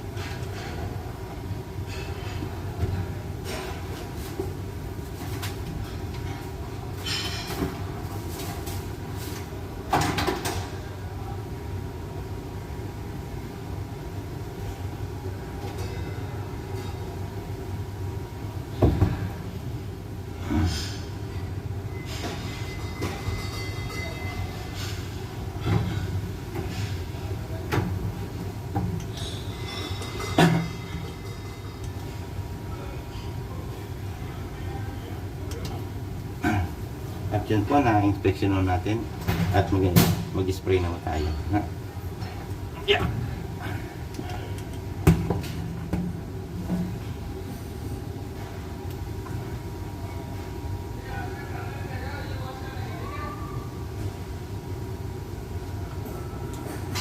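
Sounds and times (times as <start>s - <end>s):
objects knocking and clattering: 28.7s - 32.0s.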